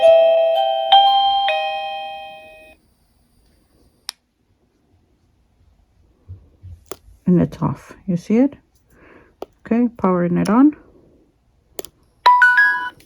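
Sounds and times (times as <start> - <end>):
doorbell electronic melody: 0.0 - 2.8, 12.3 - 13.0.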